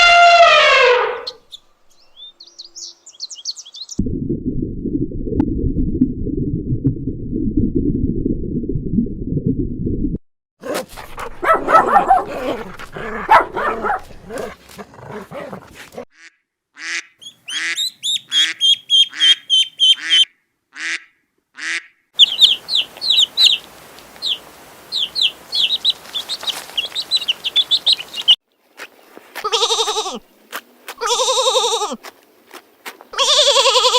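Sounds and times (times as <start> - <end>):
birds calling: 1.2 - 4.0, 17.2 - 20.3, 22.2 - 31.6
high-pitched peeping chirps: 1.3 - 4.0, 17.2 - 20.2, 22.2 - 28.4
wavering animal bleats: 29.4 - 30.2, 31.0 - 32.0, 33.2 - 33.9.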